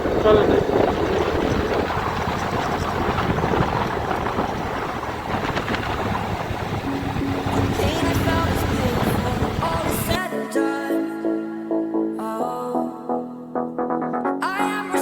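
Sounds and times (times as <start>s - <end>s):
motorbike engine: 0.0s - 10.2s
road noise: 0.0s - 10.2s
wind rushing over microphone: 0.0s - 10.2s.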